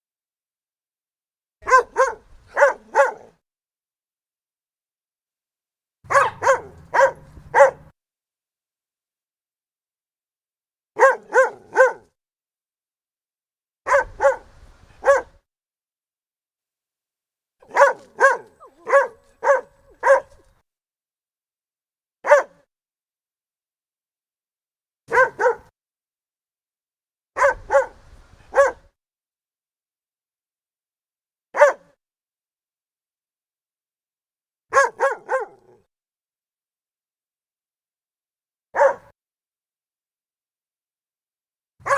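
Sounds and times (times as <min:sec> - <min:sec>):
dog barking sharply: 0:01.6 - 0:03.4, 0:06.1 - 0:07.9, 0:11.0 - 0:12.1, 0:13.9 - 0:15.4, 0:17.6 - 0:20.4, 0:22.2 - 0:22.7, 0:25.1 - 0:25.7, 0:27.4 - 0:28.9, 0:31.6 - 0:31.9, 0:34.7 - 0:35.8, 0:38.8 - 0:39.1.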